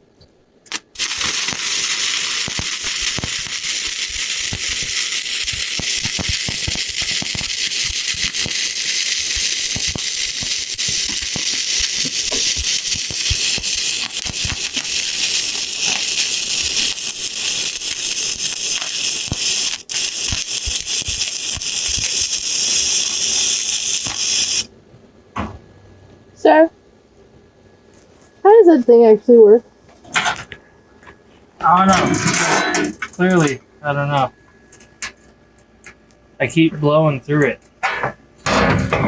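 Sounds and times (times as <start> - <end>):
welding arc crackling: 0.6 - 24.7, 31.6 - 36.0.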